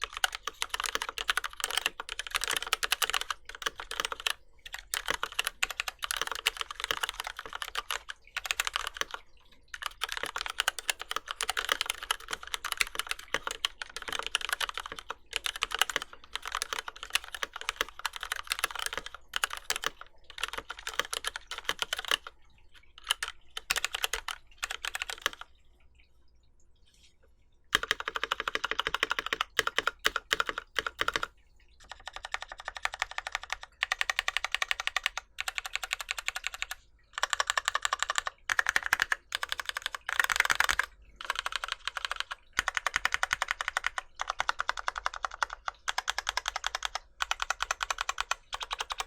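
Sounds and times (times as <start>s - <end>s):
fast mechanical keyboard typing: 0.0s - 25.5s, 27.7s - 49.0s.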